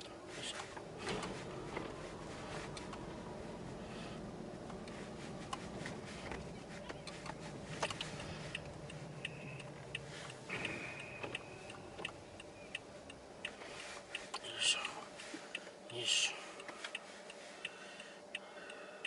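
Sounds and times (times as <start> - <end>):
car cabin rumble: 0.0 - 17.6.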